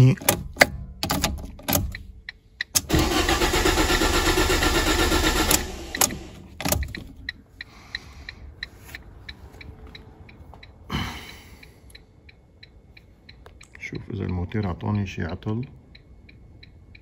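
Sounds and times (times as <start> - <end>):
starter cranking engine: 2.8 - 7.3
faint light ticks: 11.6 - 14.4.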